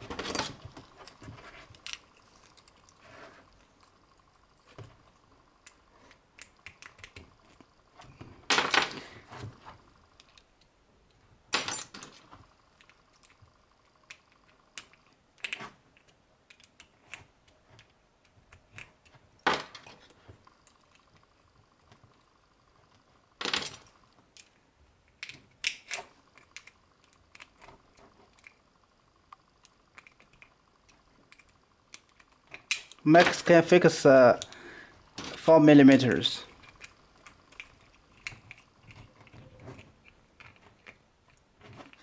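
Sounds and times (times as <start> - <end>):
small metal parts clicking: 0.1 - 3.0, 5.6 - 7.7, 12.8 - 22.2, 23.4 - 28.6, 29.3 - 33.5, 34.3 - 42.0.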